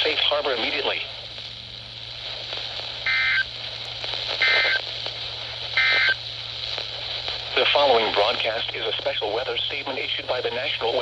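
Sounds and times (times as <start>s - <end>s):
radio receiver hiss: 0.0s - 11.0s
buzzy data tone bursts: 2.2s - 9.4s.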